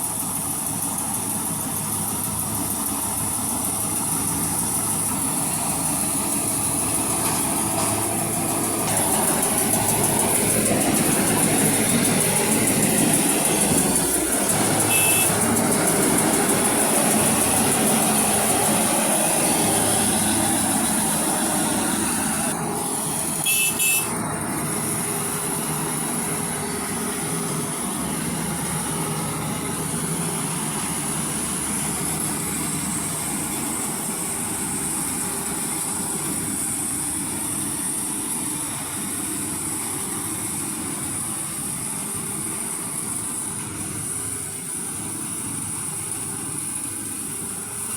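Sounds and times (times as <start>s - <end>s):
combine harvester droning: 0.0s - 47.9s
short beeps: 14.9s - 15.4s, 23.4s - 24.1s.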